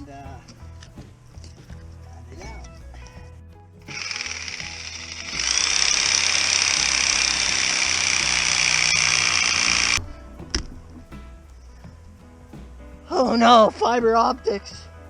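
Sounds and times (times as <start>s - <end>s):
reciprocating saw cutting root: 3.9s - 11.0s.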